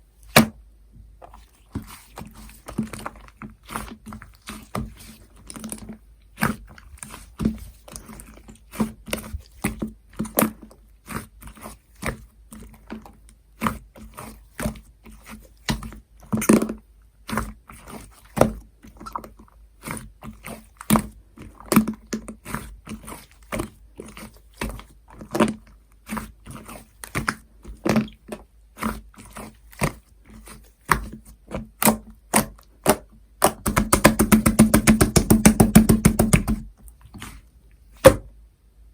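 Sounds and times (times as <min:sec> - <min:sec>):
slime air-pocket pops: 0:31.8 - 0:36.6.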